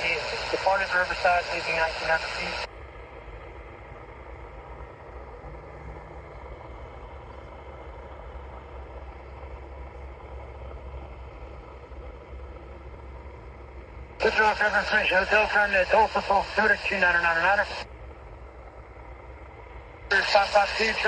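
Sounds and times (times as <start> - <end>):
radio calls: 0.0 - 2.7, 14.2 - 17.9, 20.1 - 21.0
light aircraft engine drone: 0.0 - 21.0.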